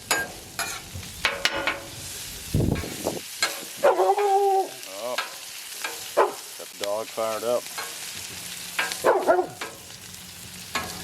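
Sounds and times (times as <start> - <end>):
food sizzling on a griddle: 0.0 - 11.0
metal spatula scraping and tapping: 0.1 - 1.9, 10.8 - 11.0.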